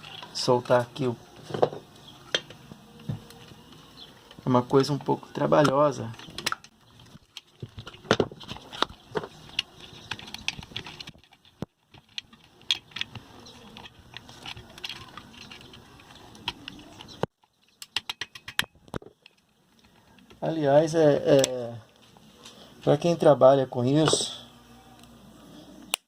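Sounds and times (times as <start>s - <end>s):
tools clicking on metal housing: 9.5s - 20.0s
faint hum: 21.2s - 26.0s.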